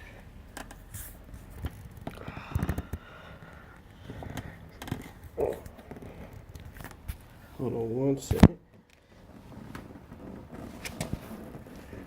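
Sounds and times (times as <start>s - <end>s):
knocks clicks and scrapes on plastic: 4.1s - 7.0s.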